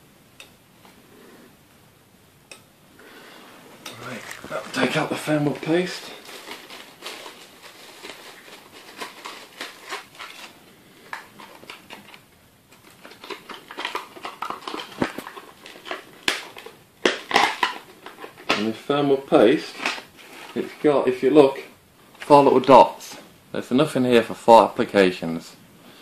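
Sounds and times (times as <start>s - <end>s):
packaging clicks and rustles: 4.0s - 18.8s.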